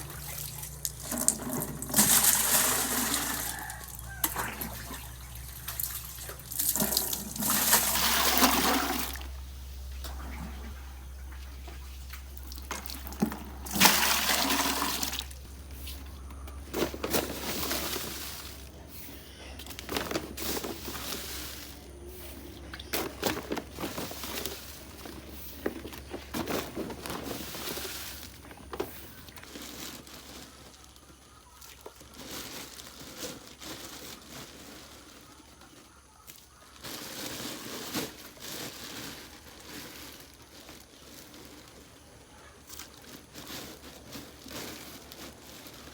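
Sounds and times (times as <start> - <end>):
water splashing and running: 0.0 - 15.5.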